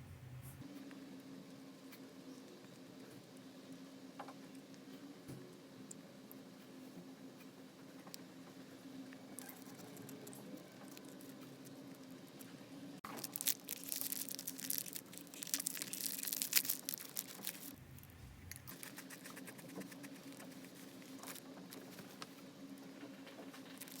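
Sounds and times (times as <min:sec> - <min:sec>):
plastic packaging crinkling: 0:13.0 - 0:22.2, 0:23.6 - 0:24.0.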